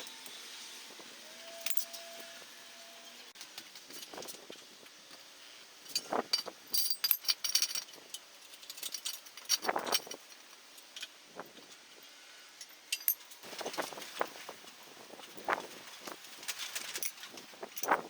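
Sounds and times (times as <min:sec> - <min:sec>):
metal clinking and rattling: 0:05.8 - 0:11.2, 0:12.8 - 0:14.4, 0:15.2 - 0:18.0.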